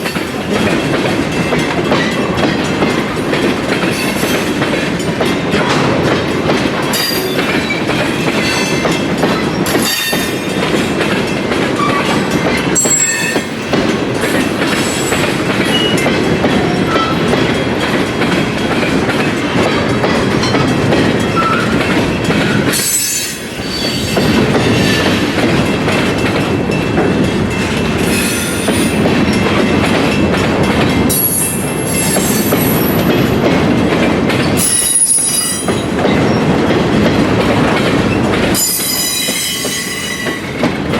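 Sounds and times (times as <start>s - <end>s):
train wheels clattering on rail: 0.0s - 40.9s
high-pitched wheel squeals: 12.8s - 13.4s.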